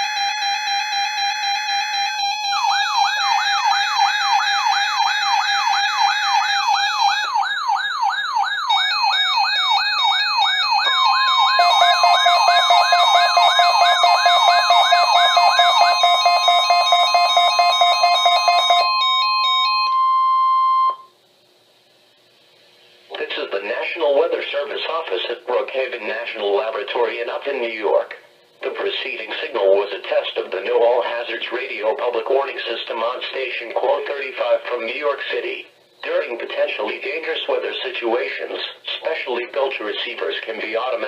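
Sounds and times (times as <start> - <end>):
steady alarm tone: 0.0 - 21.1
rising siren-like sweep: 2.2 - 20.9.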